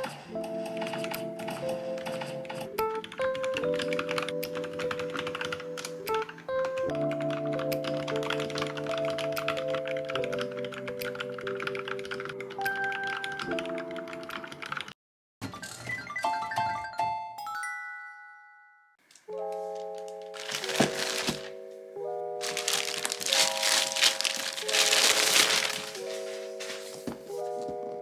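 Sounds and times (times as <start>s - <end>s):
background music: 0.0s - 14.8s, 16.0s - 28.0s
rapid typing on keyboard: 0.5s - 15.0s.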